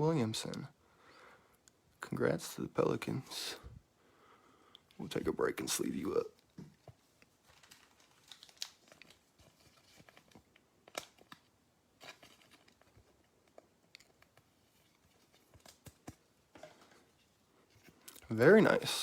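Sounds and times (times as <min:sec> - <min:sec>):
plastic and card rustling: 0:05.0 - 0:19.0.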